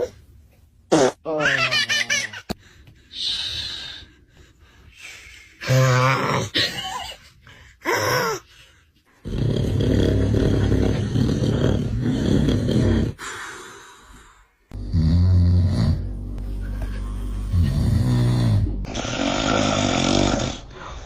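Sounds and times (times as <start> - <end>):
breathy voice-like sounds: 2.5 - 21.0
man snoring: 9.2 - 13.7, 14.7 - 16.3, 17.4 - 20.7.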